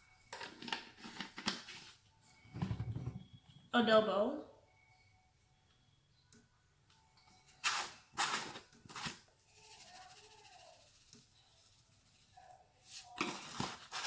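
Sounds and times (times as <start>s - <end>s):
seasoning shaker shaking: 7.6s - 14.0s.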